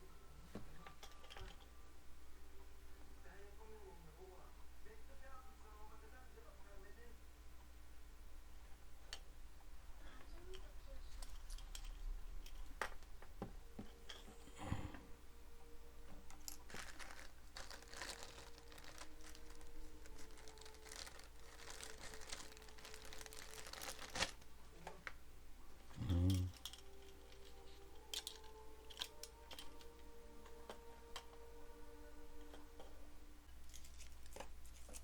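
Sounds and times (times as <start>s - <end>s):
plastic packaging crinkling: 16.3s - 24.5s, 33.6s - 35.0s.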